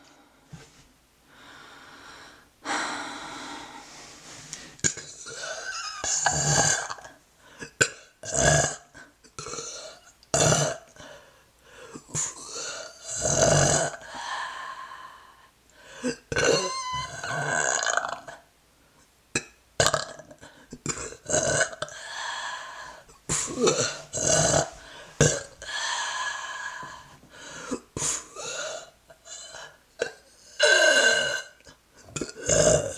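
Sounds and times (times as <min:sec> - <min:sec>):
person belching: 0:16.3 - 0:18.4, 0:19.4 - 0:22.0, 0:23.4 - 0:25.6, 0:32.1 - 0:32.9.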